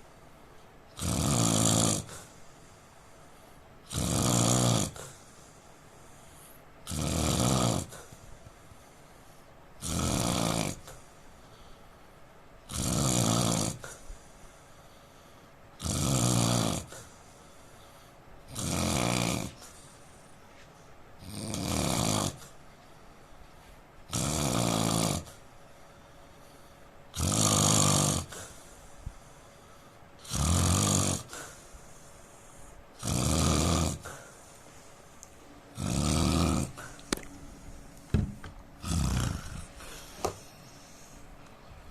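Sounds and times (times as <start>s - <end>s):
man snoring loudly: 1.0s - 2.3s, 3.9s - 5.2s, 6.9s - 8.1s, 9.8s - 11.0s, 12.7s - 14.0s, 15.8s - 17.1s, 18.5s - 19.7s, 21.2s - 22.5s, 24.1s - 25.4s, 27.1s - 28.5s, 30.2s - 31.6s, 33.0s - 34.3s, 35.8s - 37.0s, 38.8s - 40.4s.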